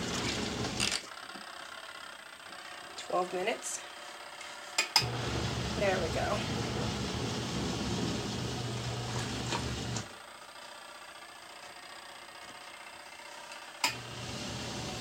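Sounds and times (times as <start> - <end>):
washing machine motor humming: 0.0 - 1.6, 5.0 - 12.8, 13.8 - 15.0.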